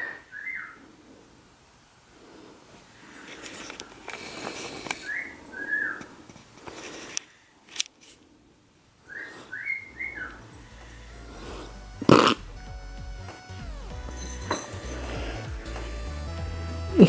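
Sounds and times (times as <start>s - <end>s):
bird chirping whistled notes: 0.0s - 0.8s, 5.0s - 6.1s, 9.0s - 11.2s
rustling: 2.1s - 12.5s.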